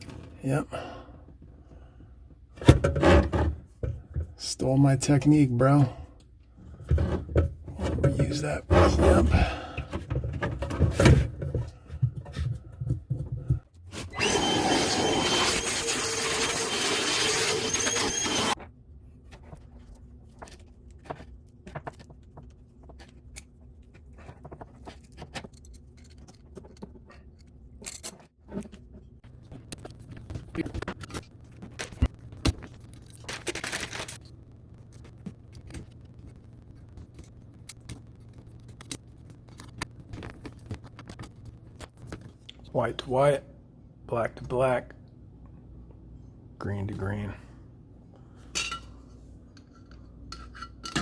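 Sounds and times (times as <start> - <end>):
loud scraping: 14.2 - 18.6.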